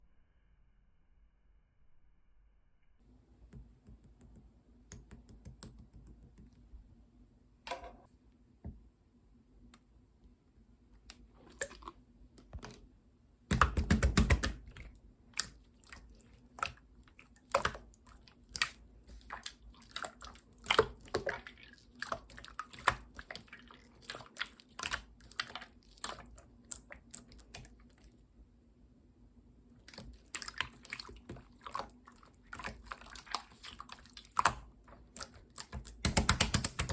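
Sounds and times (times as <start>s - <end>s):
slime squishing with wet clicks: 13.5s - 28.2s, 29.8s - 36.9s.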